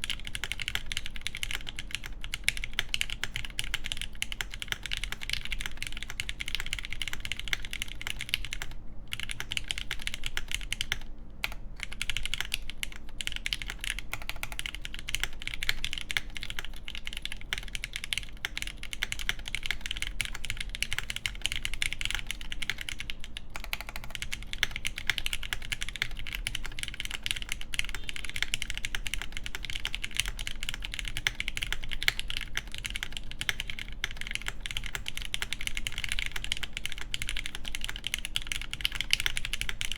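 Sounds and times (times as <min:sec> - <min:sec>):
fast mechanical keyboard typing: 0:00.0 - 0:39.9.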